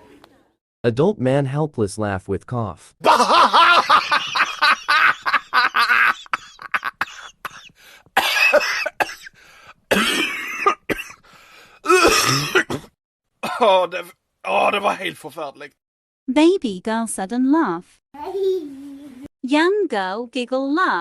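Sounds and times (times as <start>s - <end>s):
man laughing: 3.0s - 7.7s
man coughing: 5.8s - 11.2s, 11.8s - 13.7s.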